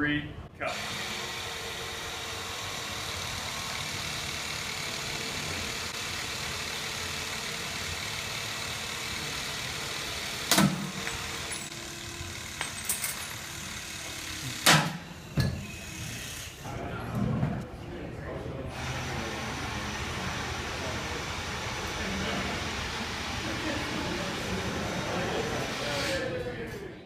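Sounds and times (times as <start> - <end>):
hydraulic cable cutter running: 0.6 - 16.7, 18.7 - 26.4
sharp cable snap: 10.5 - 10.9.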